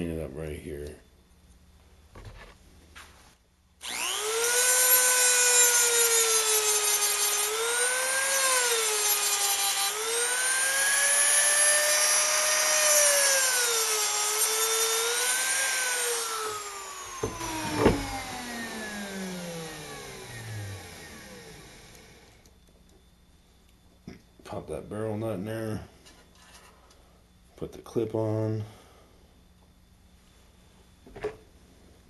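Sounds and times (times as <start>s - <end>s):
rotary tool grinding metal: 3.8s - 22.3s.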